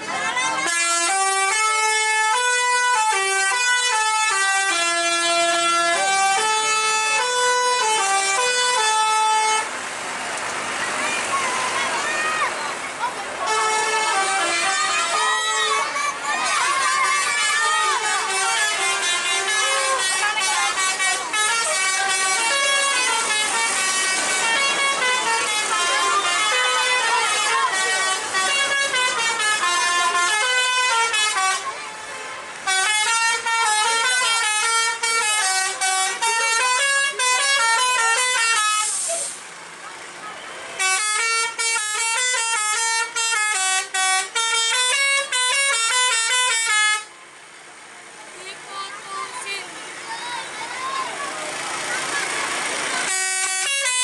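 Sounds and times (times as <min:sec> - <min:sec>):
bus melody horns playing tunes: 0:00.0 - 0:39.8, 0:40.4 - 0:47.8, 0:49.4 - 0:54.0.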